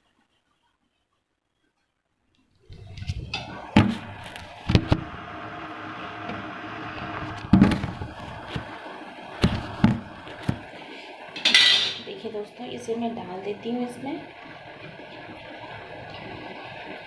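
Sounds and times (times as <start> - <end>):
steady hiss: 2.7 - 17.0
kitchen utensils knocking: 11.4 - 12.2.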